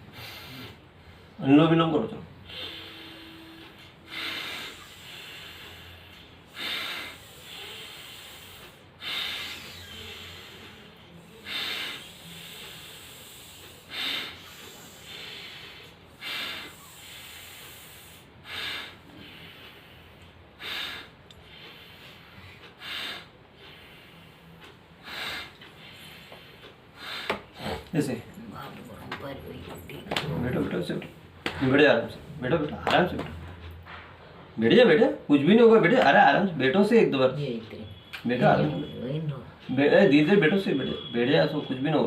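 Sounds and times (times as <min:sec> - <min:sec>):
forceful nose breathing: 0:00.0 - 0:01.4, 0:02.4 - 0:28.2.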